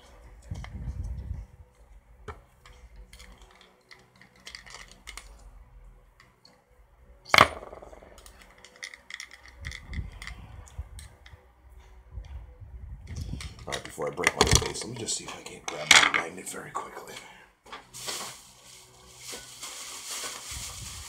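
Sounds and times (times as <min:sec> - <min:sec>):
small hard parts clicking: 0:02.6 - 0:05.5, 0:07.3 - 0:11.4.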